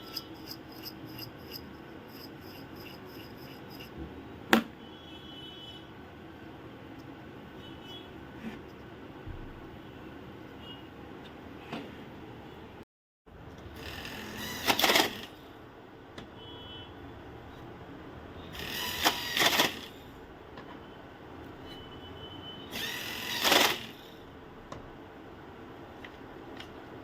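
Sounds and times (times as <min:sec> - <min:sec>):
banknote counting machine whirring: 0:00.0 - 0:04.0, 0:13.8 - 0:15.4, 0:18.6 - 0:20.0, 0:22.7 - 0:24.1.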